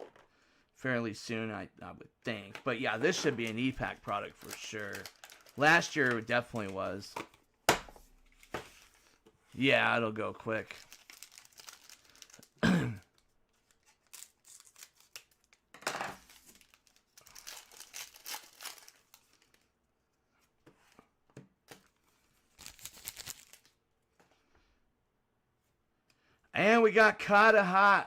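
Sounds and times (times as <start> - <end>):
wrappers tearing and crinkling: 3.2 - 6.9, 10.6 - 12.6, 13.6 - 15.6, 16.2 - 19.6, 22.5 - 23.8.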